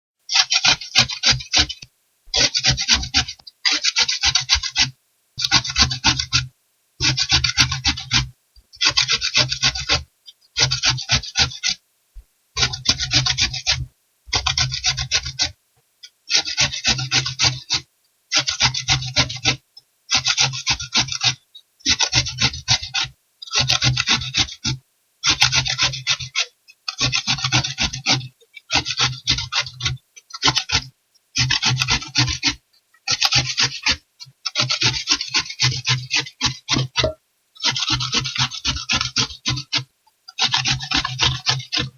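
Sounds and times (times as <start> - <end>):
cucumber scraping on rough metal: 36.6 - 37.2.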